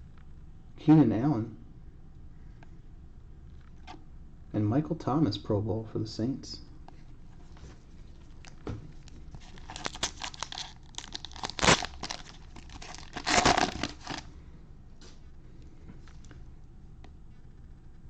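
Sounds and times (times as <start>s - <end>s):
plastic wrapper crinkling: 7.5s - 14.3s
plastic wrapper ripping: 8.2s - 14.3s.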